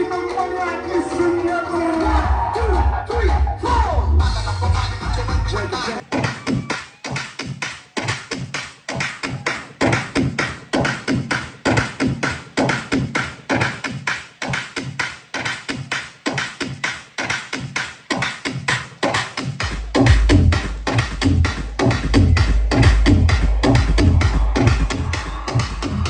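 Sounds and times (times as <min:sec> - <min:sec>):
electronic dance music: 0:00.0 - 0:26.0
heavy bass: 0:00.2 - 0:06.0, 0:19.6 - 0:26.0.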